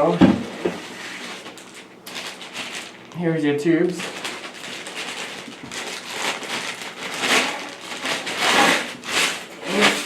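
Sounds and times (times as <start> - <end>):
packaging rustling and crinkling: 0.8 - 3.2, 3.8 - 10.0.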